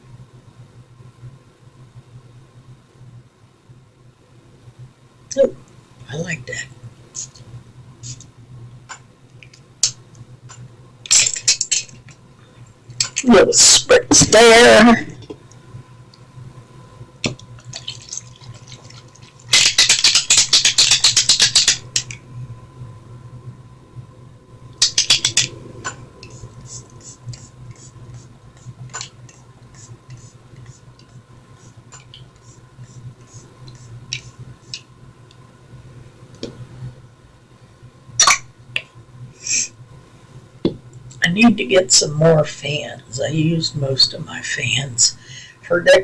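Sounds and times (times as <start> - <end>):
steady low hum: 0.0 - 46.0
sharp click: 24.8 - 25.6.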